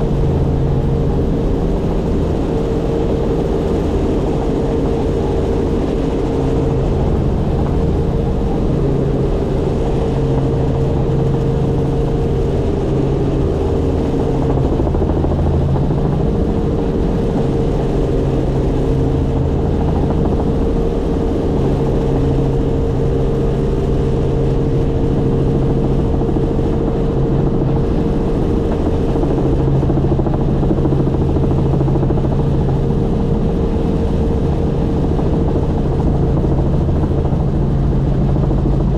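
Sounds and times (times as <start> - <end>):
helicopter engine and rotor drone: 0.0 - 38.9.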